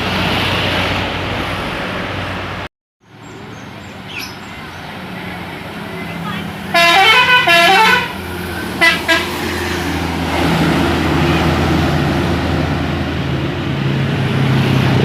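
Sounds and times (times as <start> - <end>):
bus engine running: 0.0 - 15.0
bus musical air horn melody: 6.7 - 9.8.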